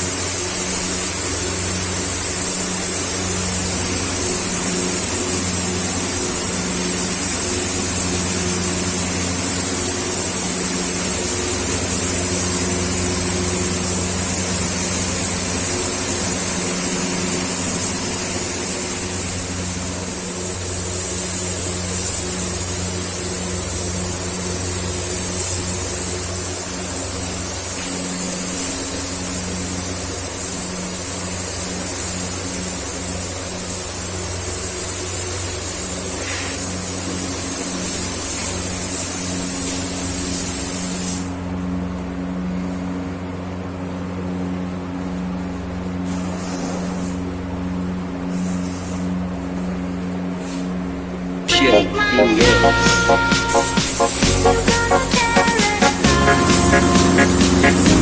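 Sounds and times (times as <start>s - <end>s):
spray gun air hiss: 18.3s - 41.4s
machine hum: 51.4s - 58.0s.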